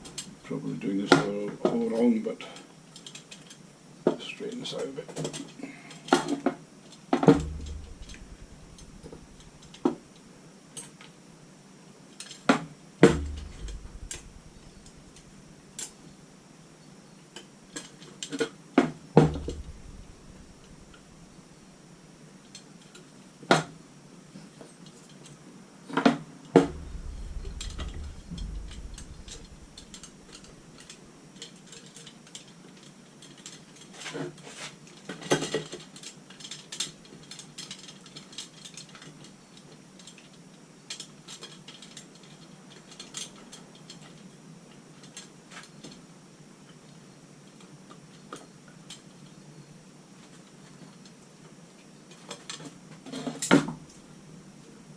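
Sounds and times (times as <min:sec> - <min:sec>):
brief low rumble: 0:07.3 - 0:09.7, 0:13.0 - 0:15.8, 0:19.2 - 0:21.4, 0:26.6 - 0:30.9
sharp metal knocks: 0:07.4 - 0:09.7, 0:13.0 - 0:15.4, 0:19.2 - 0:21.2, 0:26.6 - 0:30.8.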